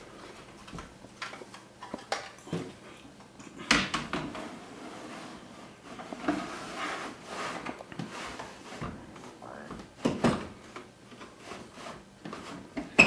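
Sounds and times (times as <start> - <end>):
parts scraping and rustling: 4.2 - 9.4.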